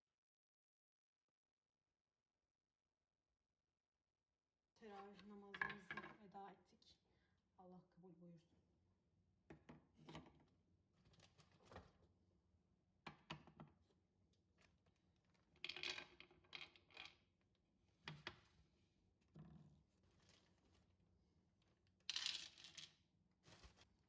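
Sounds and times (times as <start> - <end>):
soft rustles: 23.4 - 24.0.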